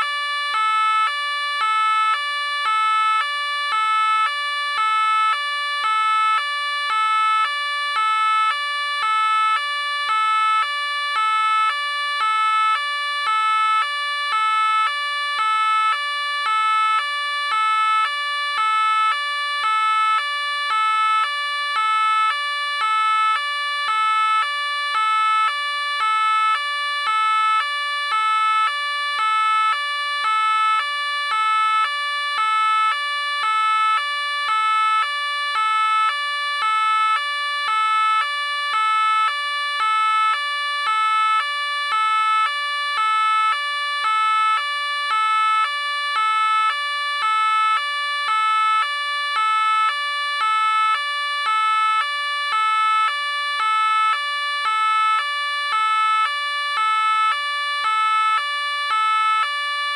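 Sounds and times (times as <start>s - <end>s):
police car two-tone siren: 0.0s - 59.9s.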